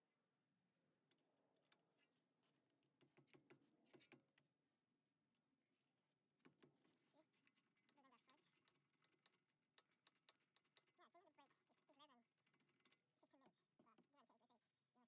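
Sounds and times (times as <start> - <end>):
faint clicks and taps: 1.1 - 4.5, 6.4 - 14.6.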